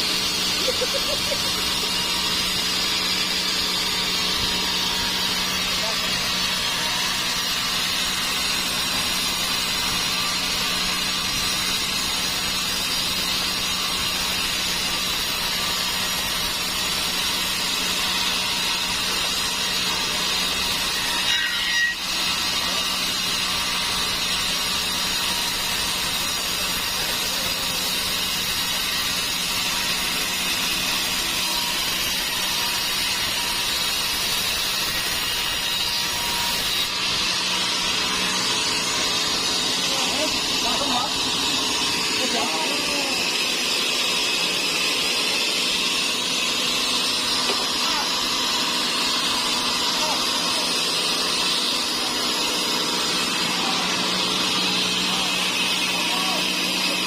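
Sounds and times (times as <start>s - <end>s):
saw blade cutting log: 0.0s - 57.0s.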